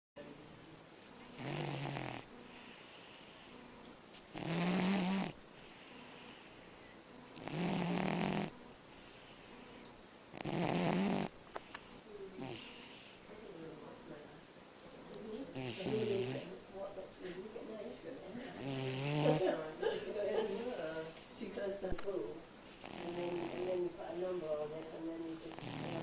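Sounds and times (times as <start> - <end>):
dog snoring: 1.2 - 13.2, 15.5 - 16.5, 18.5 - 19.6, 20.4 - 21.3, 22.6 - 26.0
dog breathing: 1.2 - 13.3, 15.5 - 16.6, 17.2 - 21.6, 22.6 - 26.0.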